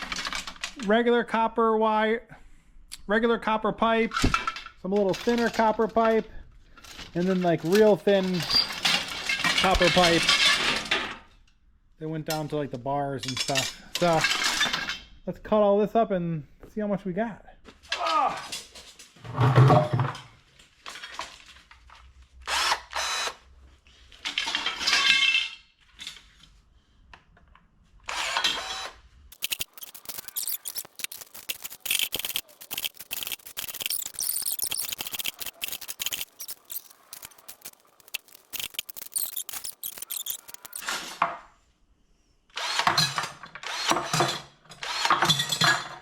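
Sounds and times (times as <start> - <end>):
power tool cutting metal pipe: 42.6 - 45.4.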